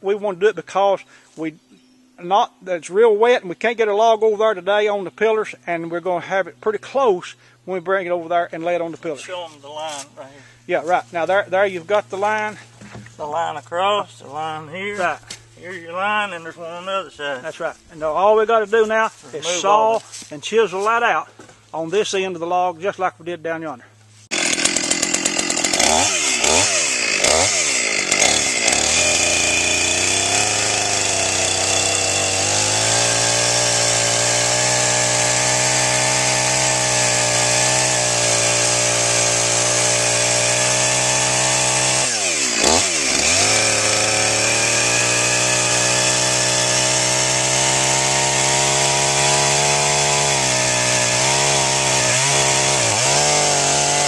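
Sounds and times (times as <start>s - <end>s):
chainsaw revving and sawing log: 24.3s - 54.0s.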